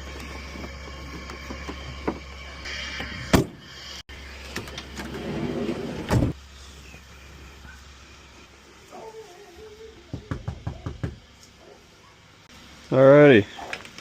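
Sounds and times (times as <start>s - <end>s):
steady low hum: 0.0s - 12.9s
car doors shutting: 4.6s - 6.4s.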